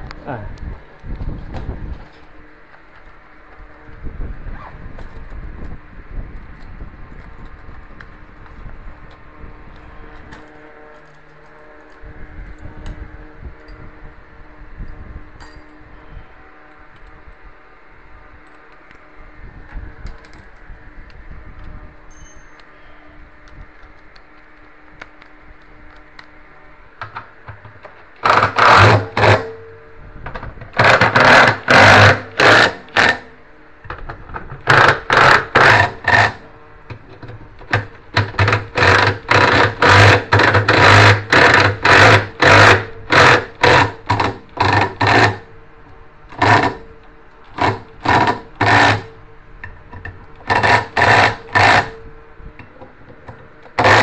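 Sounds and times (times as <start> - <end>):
electric screwdriver motor bursts: 38.4 - 45.4.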